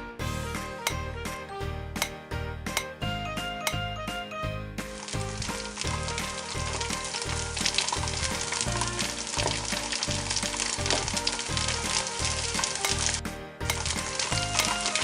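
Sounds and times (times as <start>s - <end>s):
background music with beat: 0.0s - 15.0s
continuous sizzling hiss: 5.0s - 13.2s.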